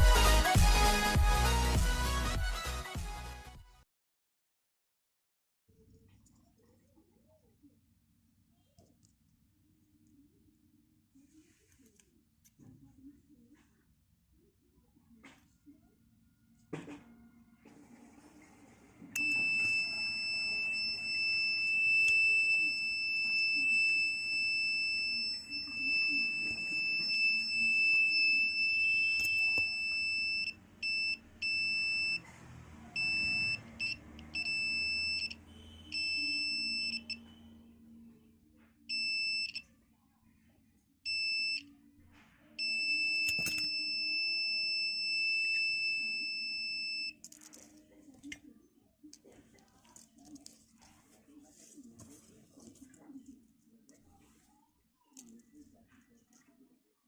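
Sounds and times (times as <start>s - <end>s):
alarm buzzer high tone: 33.0s - 37.6s.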